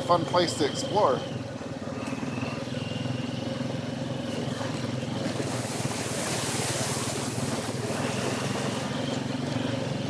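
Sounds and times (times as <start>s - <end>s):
atv engine running: 0.0s - 10.0s.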